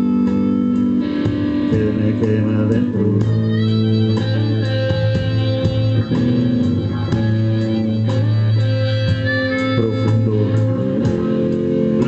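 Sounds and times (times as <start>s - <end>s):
blues guitar bending: 0.0s - 12.0s
held bass note: 0.0s - 12.0s.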